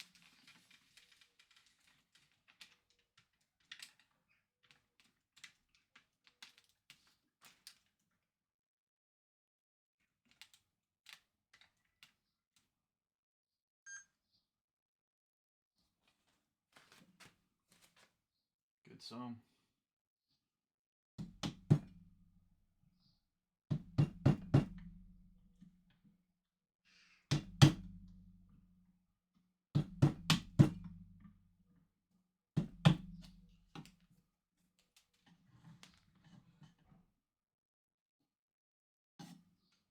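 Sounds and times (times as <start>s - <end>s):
faint sharp clicks and scrapes: 0.0s - 8.0s, 34.8s - 37.0s.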